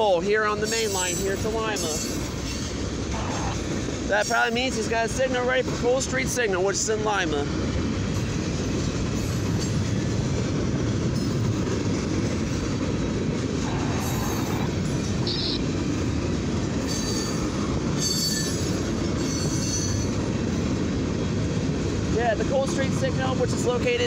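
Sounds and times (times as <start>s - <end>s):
steel wheels rumbling on rail: 0.0s - 24.0s
high wheel squeals: 16.8s - 20.2s.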